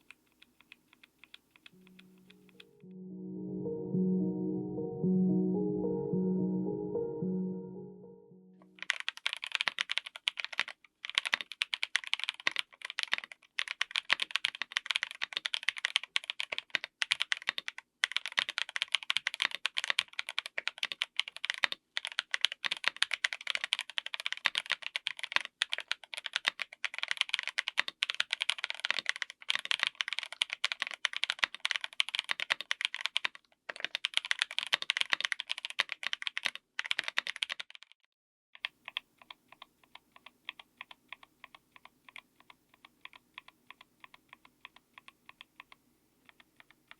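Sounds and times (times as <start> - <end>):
fast typing on mechanical keyboard: 8.8 - 38.0, 38.6 - 46.9.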